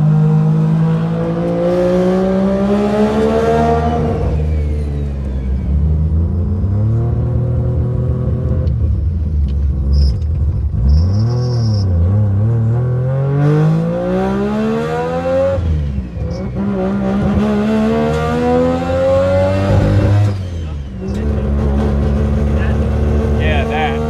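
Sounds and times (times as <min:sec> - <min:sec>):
rotary engine revving: 0:09.9 - 0:24.0.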